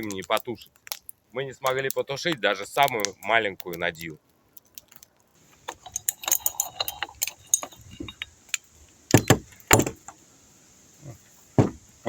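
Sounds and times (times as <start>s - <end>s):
metal clinking and rattling: 4.8s - 10.2s
heavy knocks: 9.1s - 10.1s, 11.6s - 11.8s.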